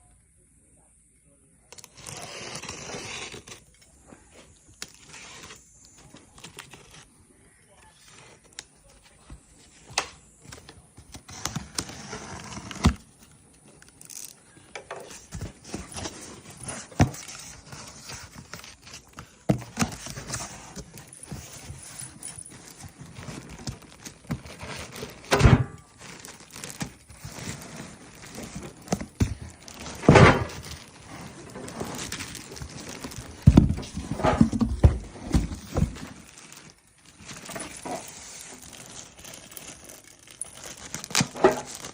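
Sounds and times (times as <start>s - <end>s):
packaging rustling: 4.7s - 7.2s, 8.0s - 41.9s.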